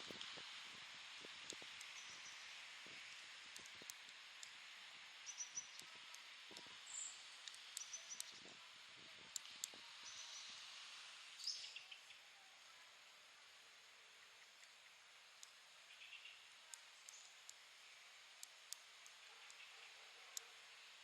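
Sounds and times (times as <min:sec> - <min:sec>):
steady outdoor hiss: 0:00.0 - 0:21.0
knitting needles ticking: 0:01.2 - 0:04.6, 0:16.6 - 0:21.0
small birds chirping: 0:01.2 - 0:21.0.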